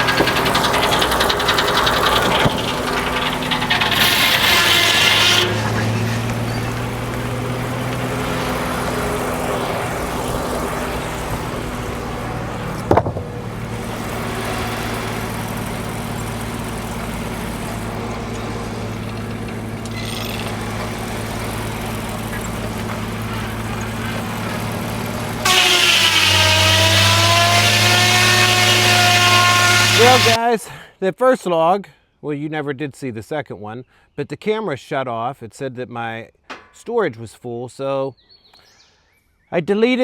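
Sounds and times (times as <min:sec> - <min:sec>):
sawmill engine running: 0:00.0 - 0:30.4.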